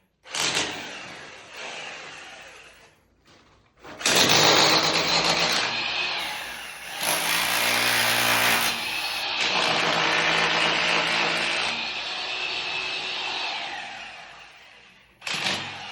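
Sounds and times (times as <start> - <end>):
power tool running under load: 6.2 - 9.3.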